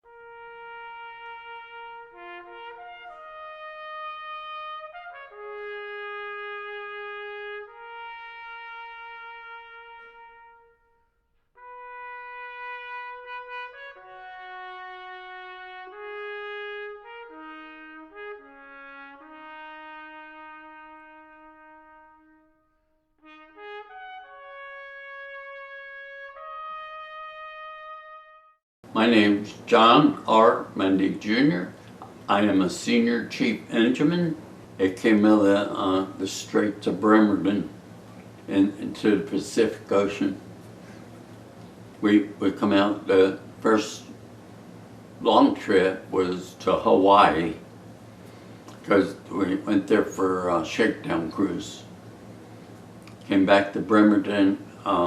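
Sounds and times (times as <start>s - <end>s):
brass music with trumpet melody: 0.0s - 28.6s.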